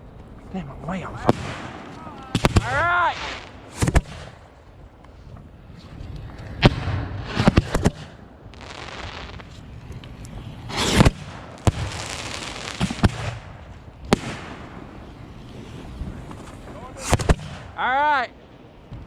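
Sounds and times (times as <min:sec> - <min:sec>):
fireworks crackling hiss: 0:00.6 - 0:04.6, 0:05.2 - 0:17.9
fireworks bangs: 0:00.8 - 0:04.7, 0:06.6 - 0:17.9.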